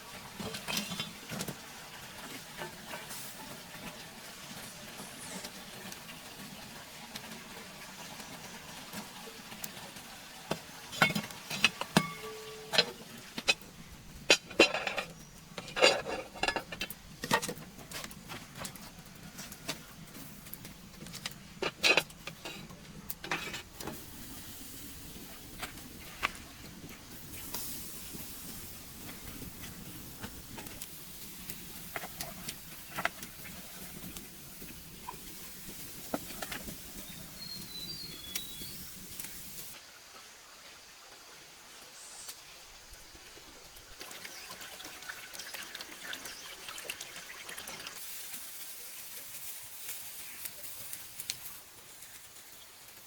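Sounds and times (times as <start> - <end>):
dishes and utensils clinking: 10.9 - 13.6, 14.2 - 17.6, 21.6 - 23.7.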